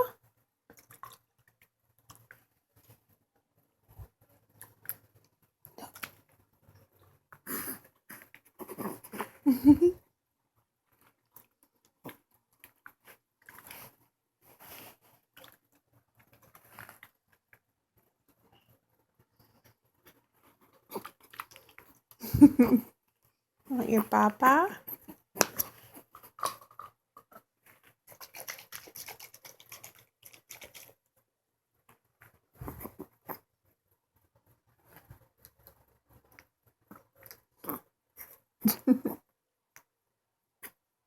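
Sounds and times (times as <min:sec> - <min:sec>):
baby lip-smacking and sucking: 0:28.1 - 0:30.9.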